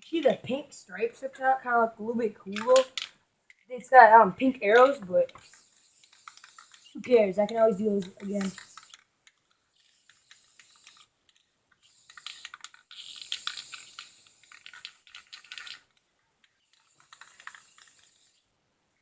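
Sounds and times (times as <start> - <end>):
spray paint can hissing: 4.7 - 9.1, 9.7 - 15.9, 16.6 - 18.4.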